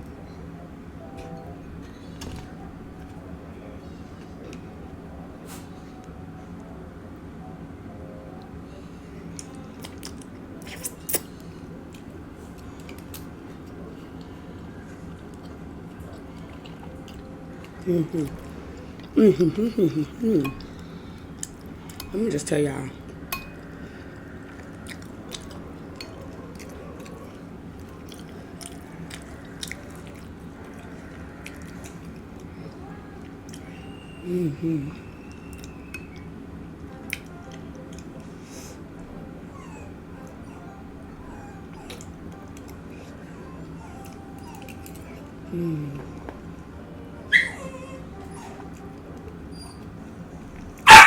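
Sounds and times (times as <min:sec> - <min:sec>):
steady low hum: 0:00.0 - 0:50.9
person chewing food: 0:09.3 - 0:13.3, 0:14.1 - 0:22.0, 0:23.0 - 0:32.5
lips smacking: 0:09.4 - 0:11.3.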